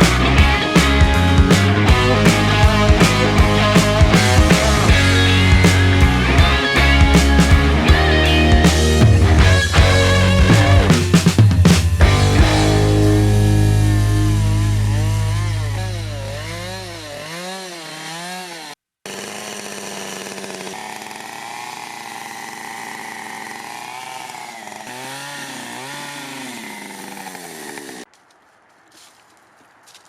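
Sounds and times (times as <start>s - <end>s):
chainsaw cutting wood: 0.0s - 28.1s.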